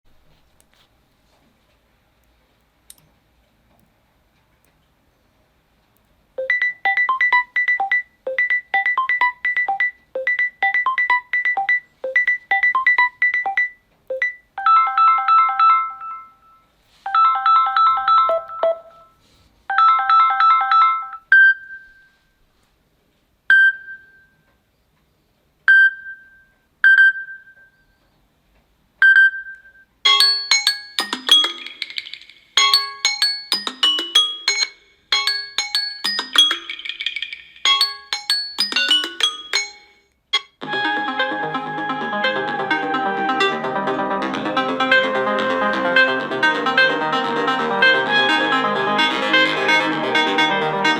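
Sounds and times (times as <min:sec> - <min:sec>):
electronic ringtone figure: 0:06.4 - 0:22.0, 0:30.1 - 0:50.9
chime-like chords: 0:30.1 - 0:40.0.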